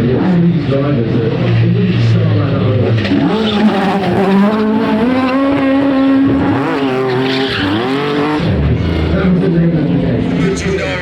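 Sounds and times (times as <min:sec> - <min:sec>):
rally car engine revving: 0:00.0 - 0:11.0
tyres skidding: 0:01.4 - 0:09.4.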